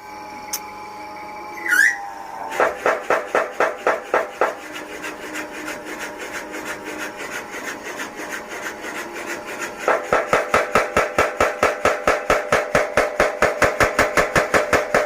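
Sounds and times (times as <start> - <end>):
steady motor hum: 0.0 - 15.0
power hammer blows: 2.4 - 4.6.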